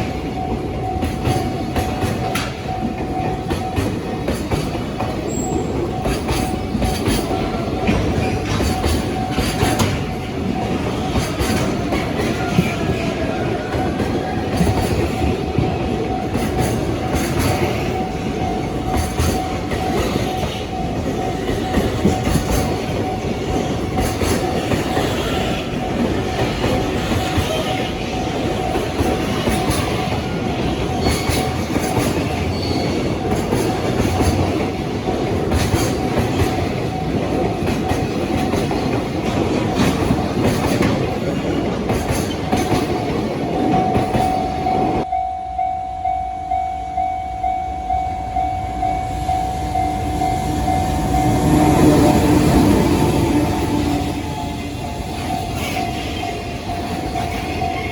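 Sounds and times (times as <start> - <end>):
wheels clicking over rail joints: 0.0 - 45.1
freight train rumbling past: 0.0 - 57.9
level-crossing warning tone: 0.0 - 57.9.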